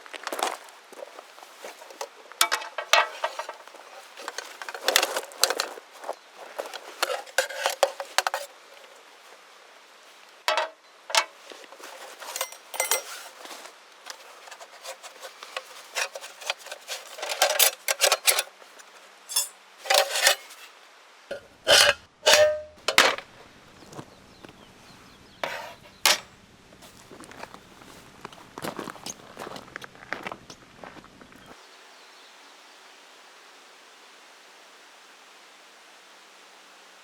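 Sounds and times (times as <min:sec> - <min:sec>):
metal utensils clinking and clattering: 0:01.8 - 0:05.8, 0:06.5 - 0:08.5, 0:10.5 - 0:20.7, 0:21.3 - 0:23.2, 0:25.4 - 0:26.3.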